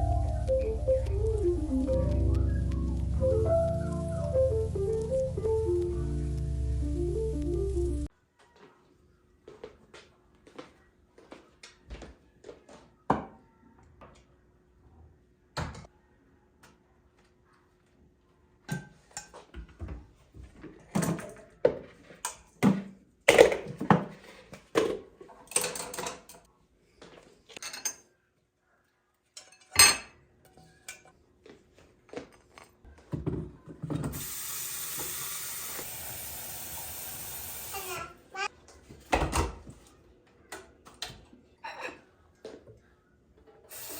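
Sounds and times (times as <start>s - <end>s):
dishes and cutlery clattering: 20.9s - 26.5s, 27.5s - 28.1s, 29.4s - 31.2s, 41.6s - 42.1s
running tap water: 34.1s - 38.1s.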